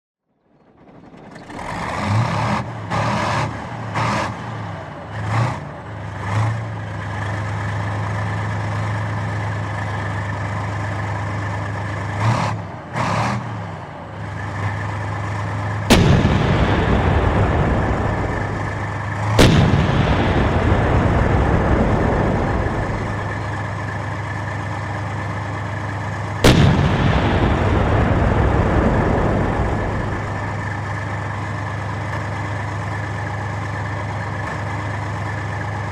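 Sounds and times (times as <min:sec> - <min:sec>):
tank engine humming and revving: 0:00.4 - 0:35.9
tank gun firing: 0:15.8 - 0:24.9, 0:26.3 - 0:31.7
long echo of gunshot: 0:15.9 - 0:24.0, 0:26.4 - 0:31.2.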